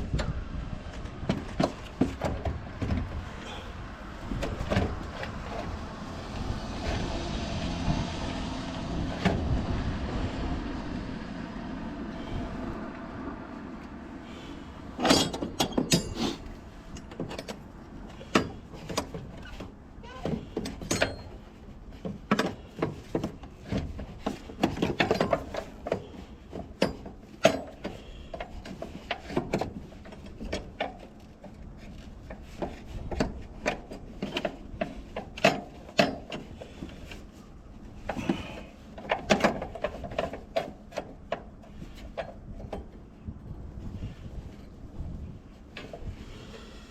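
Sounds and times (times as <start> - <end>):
hand tools and metal parts clattering: 0.0 - 7.2, 13.8 - 43.2.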